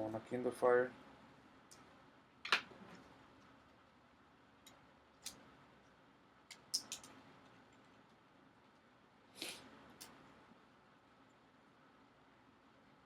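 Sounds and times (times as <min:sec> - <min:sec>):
small parts and tools clicking: 0:06.5 - 0:08.8.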